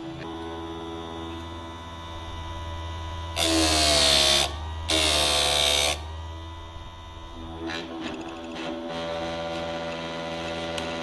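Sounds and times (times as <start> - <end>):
electric motor hum: 0.0 - 11.0.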